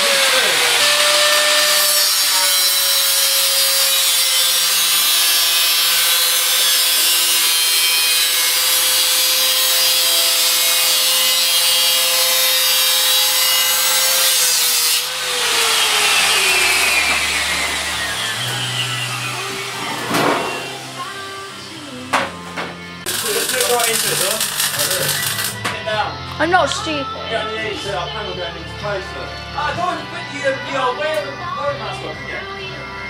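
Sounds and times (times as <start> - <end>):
angle grinder grinding metal: 0.0 - 26.4.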